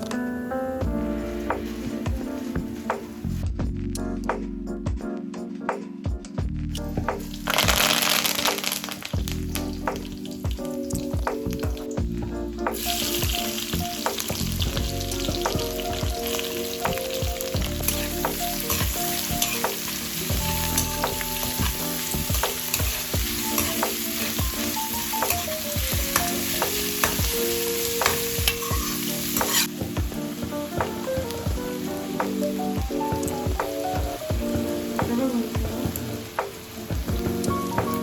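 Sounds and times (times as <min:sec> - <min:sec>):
food sizzling in a pan: 0:07.5 - 0:10.1, 0:12.7 - 0:33.4
spoon scraping a pan: 0:28.8 - 0:29.8.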